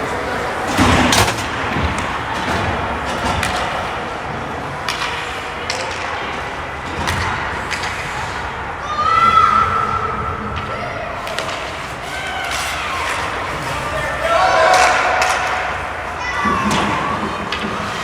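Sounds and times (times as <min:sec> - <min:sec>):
crowd and rink noise: 0:00.0 - 0:18.0
hockey sticks and puck clacking: 0:00.0 - 0:18.0.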